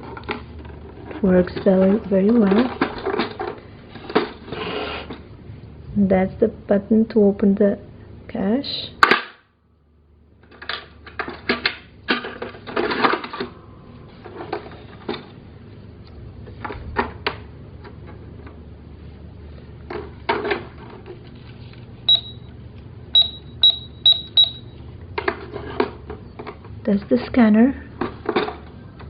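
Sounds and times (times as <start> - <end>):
plastic parts clicking and clattering: 0.0 - 4.4, 10.4 - 13.6
short high electronic beeps: 22.1 - 22.5, 23.2 - 24.8.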